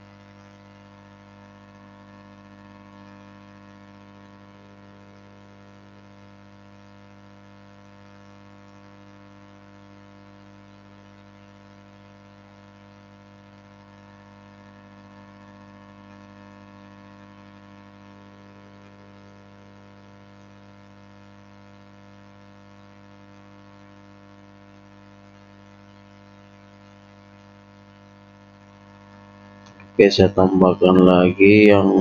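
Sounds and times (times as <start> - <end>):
buzzy electrical hum: 0.0 - 21.9, 28.6 - 32.0.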